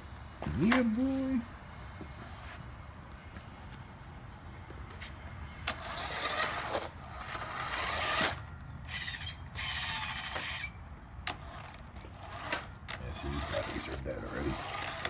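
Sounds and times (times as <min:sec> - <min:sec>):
remote-control car motor hiss: 0:05.8 - 0:10.8.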